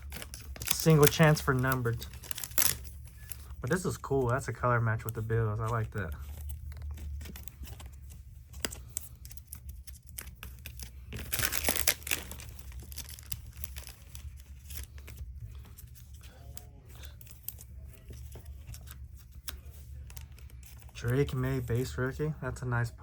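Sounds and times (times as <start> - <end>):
plastic wrapper crinkling: 0.0 - 21.9.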